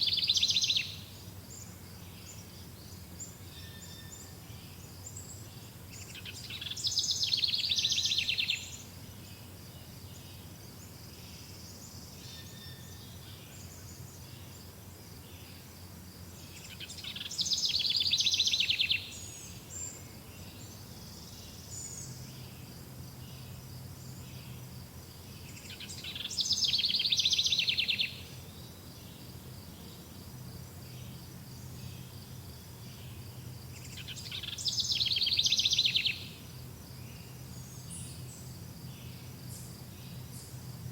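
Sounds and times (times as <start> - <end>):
songbird trilling song: 0.0 - 15.7, 16.3 - 40.9
faint bird chirps: 11.2 - 14.6, 25.3 - 30.1, 32.9 - 36.4.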